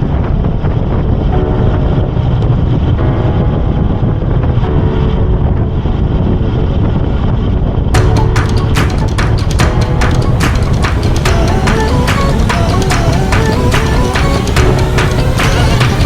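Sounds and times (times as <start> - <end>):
wind buffeting microphone: 0.0 - 16.0
music with sharp beat: 8.0 - 16.0.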